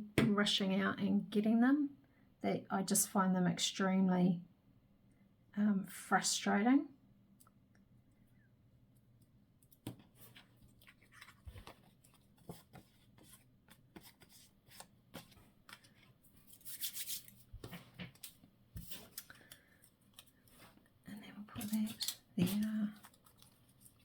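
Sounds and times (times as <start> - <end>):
paper crinkles and taps: 9.7 - 16.2, 16.8 - 20.9, 21.6 - 24.0
papery rustle: 10.2 - 13.4.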